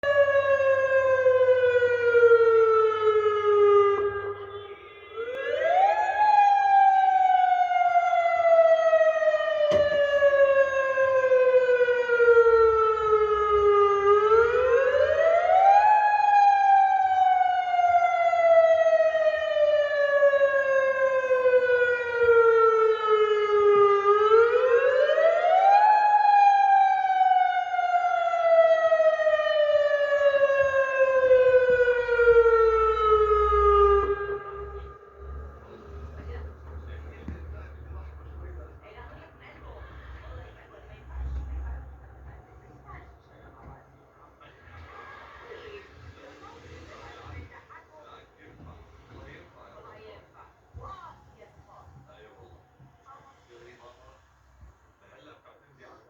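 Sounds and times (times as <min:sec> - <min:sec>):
warning siren wailing: 0:00.0 - 0:47.5.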